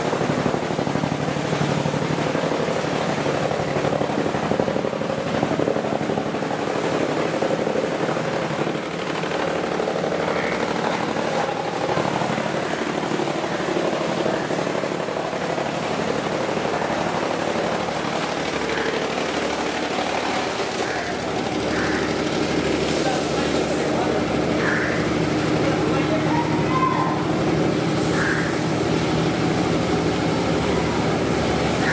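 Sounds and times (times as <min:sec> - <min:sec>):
machinery humming: 0:00.0 - 0:31.9.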